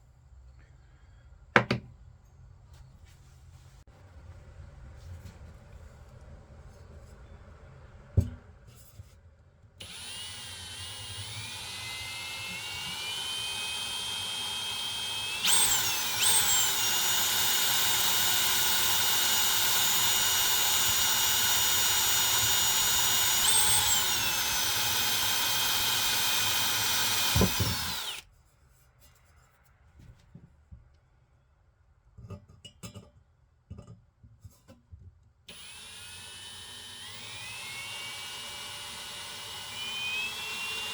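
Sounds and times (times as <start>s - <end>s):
electric drill whining: 9.8s - 28.2s, 35.5s - 40.9s.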